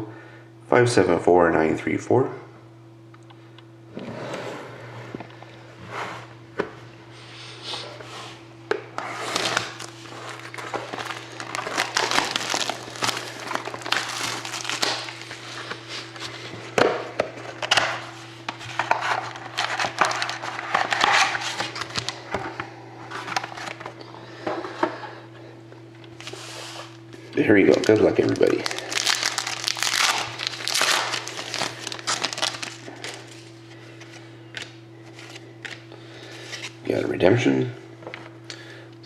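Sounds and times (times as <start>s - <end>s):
low electrical hum: 0.0s - 39.0s
plastic wrapping tearing and crinkling: 9.2s - 16.2s, 19.2s - 22.2s, 26.2s - 33.5s.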